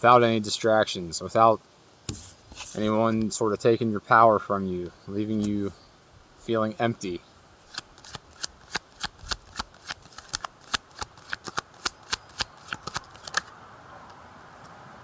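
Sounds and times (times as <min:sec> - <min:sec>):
cards being shuffled by hand: 0:07.7 - 0:13.5.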